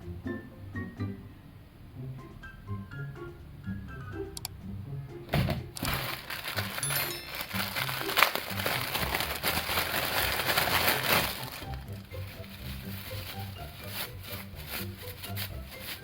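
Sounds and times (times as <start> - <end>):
background music: 0.0 - 16.0
packaging crinkling: 5.8 - 16.0.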